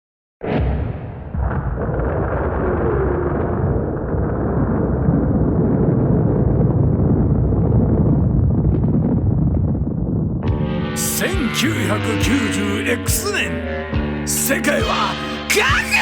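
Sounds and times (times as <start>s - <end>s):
explosion low rumble: 0.4s - 10.9s.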